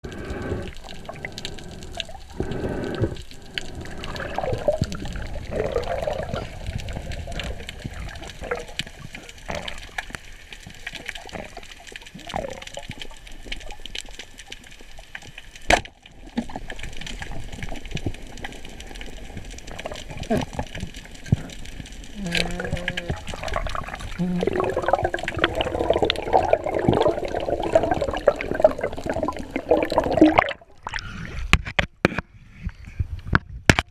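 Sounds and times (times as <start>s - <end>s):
crackles: 0.0s - 33.9s
water sloshing and bubbling: 0.0s - 33.9s.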